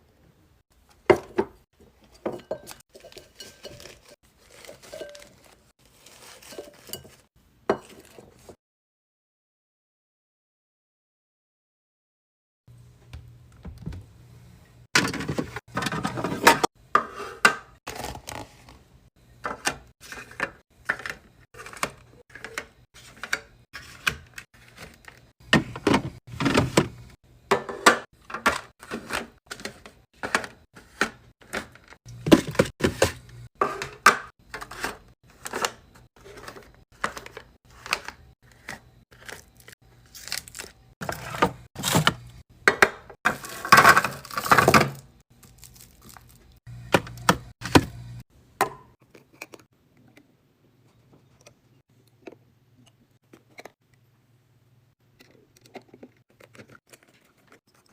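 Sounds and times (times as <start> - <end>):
food containers clattering: 1.0 - 8.6, 14.9 - 18.8, 19.4 - 39.8, 40.4 - 49.7.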